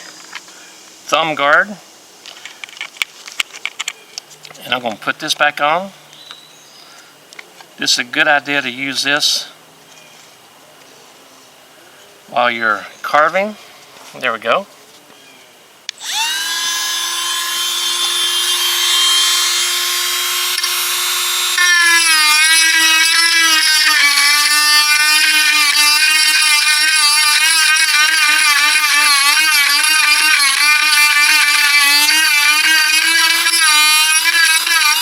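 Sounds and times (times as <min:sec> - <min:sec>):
rotary tool carving wood: 0:15.9 - 0:35.0
rotary tool whining: 0:15.9 - 0:35.0.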